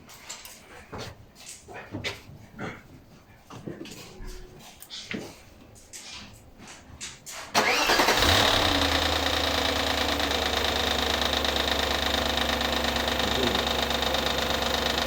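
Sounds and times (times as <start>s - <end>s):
car engine starting and idling: 7.5s - 15.0s.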